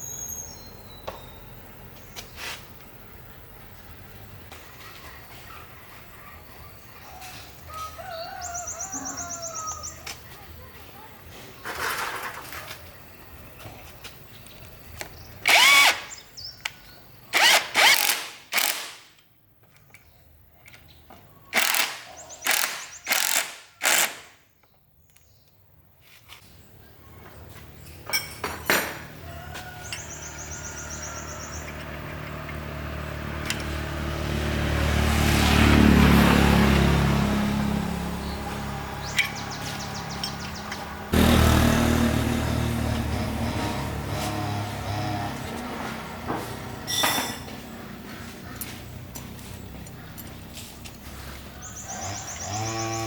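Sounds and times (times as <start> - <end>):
power tool motor running: 15.4 - 16.2, 17.3 - 19.0, 21.6 - 24.3, 36.8 - 46.0, 51.9 - 53.0.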